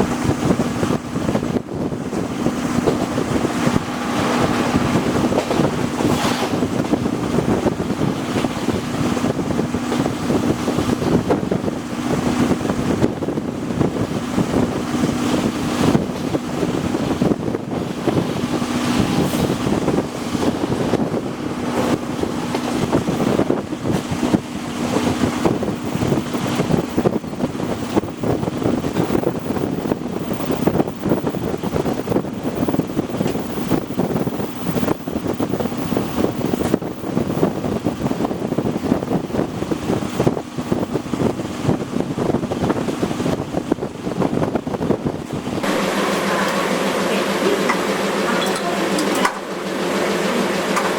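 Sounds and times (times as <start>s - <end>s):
rushing wind: 0.0s - 50.9s
steady hum: 1.0s - 8.1s, 17.2s - 41.0s, 45.6s - 50.9s
train wheels on rails knocking: 2.8s - 9.2s.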